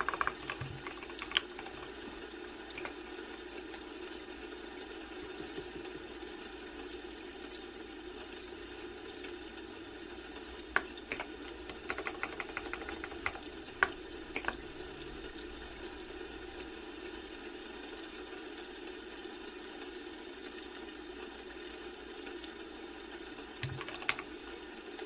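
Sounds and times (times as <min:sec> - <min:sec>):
keyboard typing clicks: 0:00.0 - 0:02.0, 0:02.8 - 0:03.1, 0:10.6 - 0:14.7, 0:23.6 - 0:24.3.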